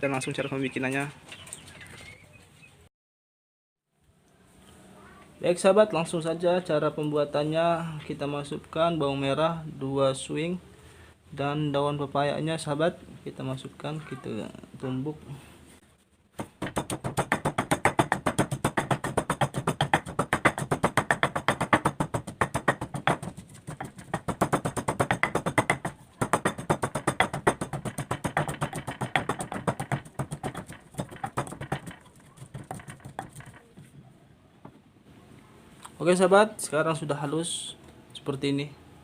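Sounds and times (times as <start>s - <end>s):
pestle pounding in mortar: 16.4s - 33.9s.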